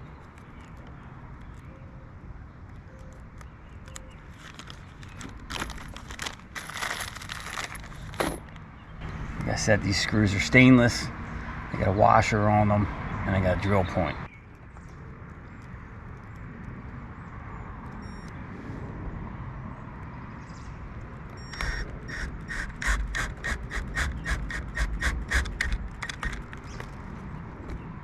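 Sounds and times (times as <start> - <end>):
cordless drill clicking: 21.5 - 26.8.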